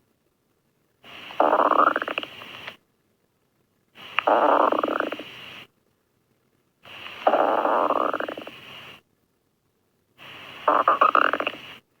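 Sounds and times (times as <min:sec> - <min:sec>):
faint hiss: 0:00.0 - 0:12.0
stomach growling: 0:01.4 - 0:02.3, 0:04.2 - 0:05.3, 0:07.2 - 0:08.6, 0:10.7 - 0:11.8.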